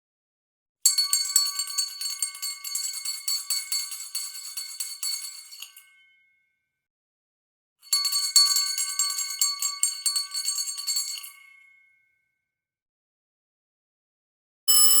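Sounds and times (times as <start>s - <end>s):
school bell ringing: 14.7s - 15.0s.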